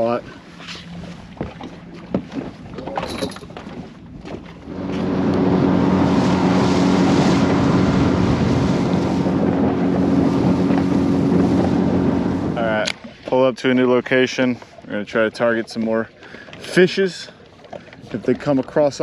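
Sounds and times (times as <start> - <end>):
boat motor running: 0.0 - 13.2
wind rushing over microphone: 4.6 - 12.9.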